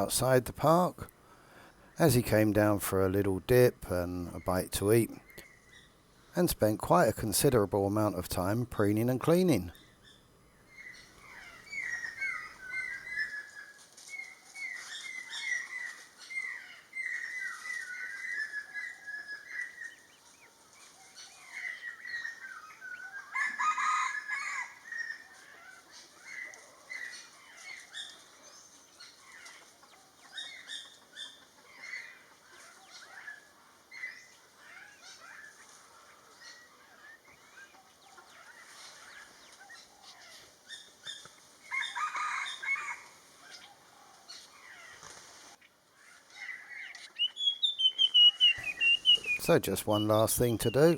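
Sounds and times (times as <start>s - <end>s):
birds chirping: 0.0s - 50.9s
loud long bird call: 46.0s - 50.9s.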